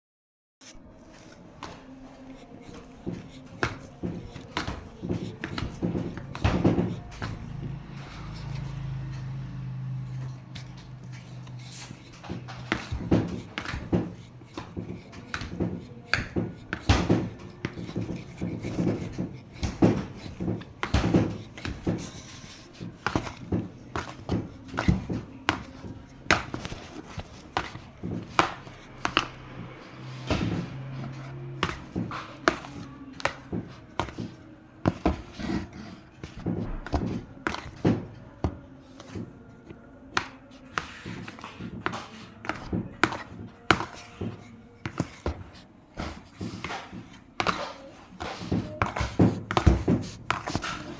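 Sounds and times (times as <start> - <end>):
utensils knocking and thunking: 0.9 - 50.9.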